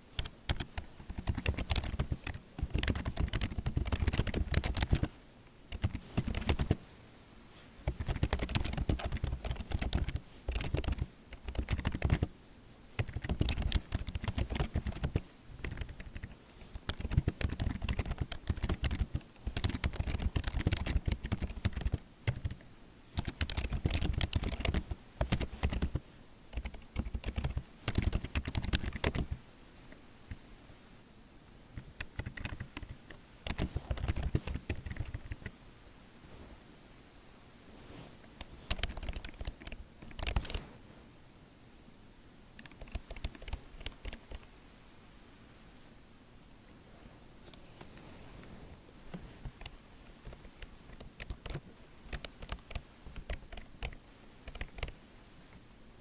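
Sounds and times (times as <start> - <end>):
typing on computer keyboard: 0.2 - 5.1, 5.7 - 6.8, 7.9 - 12.3, 13.0 - 29.4, 31.8 - 35.5, 38.7 - 40.6, 42.4 - 44.5, 49.5 - 55.0.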